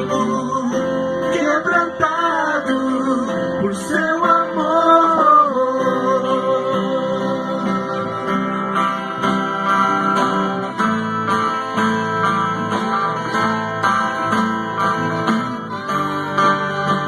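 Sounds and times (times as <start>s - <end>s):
guitar strumming chords: 0.0s - 17.0s.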